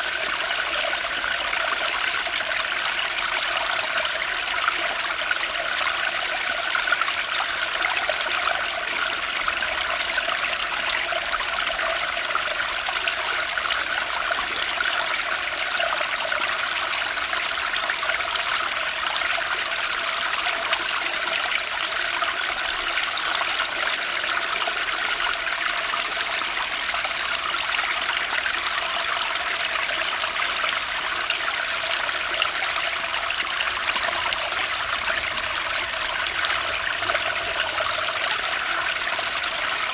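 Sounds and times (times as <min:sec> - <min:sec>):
running water flowing: 0:21.7 - 0:39.9.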